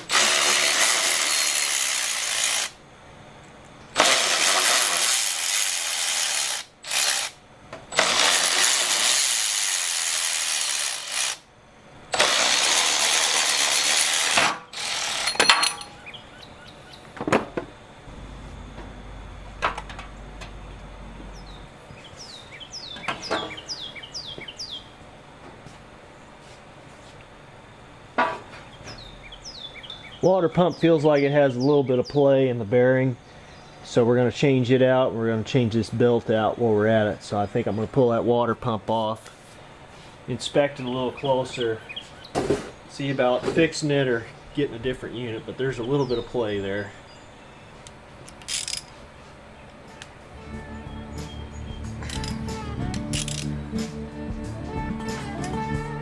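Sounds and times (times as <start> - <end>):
power tool bursts: 0.0 - 2.8, 4.0 - 11.5, 12.1 - 16.0, 48.4 - 49.0, 52.0 - 53.6.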